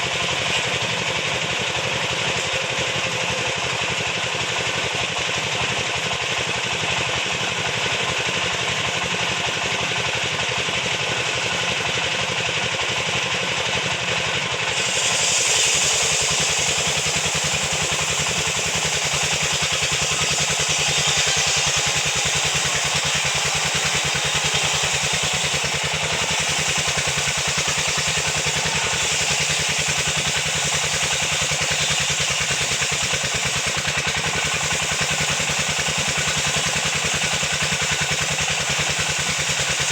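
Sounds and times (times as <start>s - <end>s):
sawmill machinery pulsing: 0.0s - 39.9s
high-pitched hiss: 14.7s - 39.9s.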